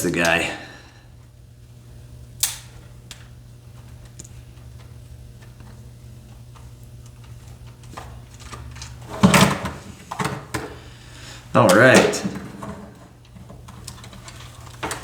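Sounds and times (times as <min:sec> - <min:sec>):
plastic clattering: 0:07.7 - 0:10.8, 0:11.6 - 0:15.0.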